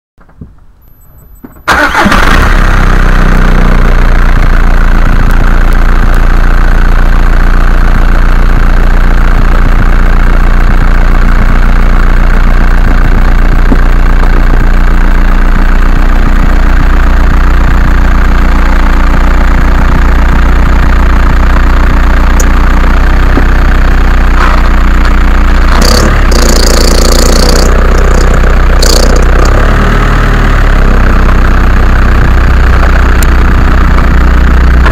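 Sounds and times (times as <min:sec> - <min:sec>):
diesel engine starting and running: 0:00.2 - 0:34.9.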